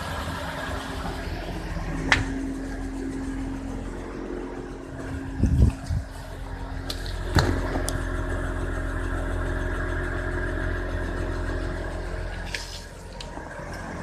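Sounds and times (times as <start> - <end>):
road noise: 0.0 - 14.0
wheel bearing drone: 0.0 - 14.0.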